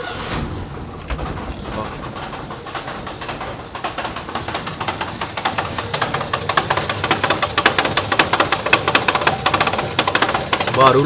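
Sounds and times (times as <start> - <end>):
car engine idling: 0.0 - 11.0
gearbox rattling: 0.0 - 11.0.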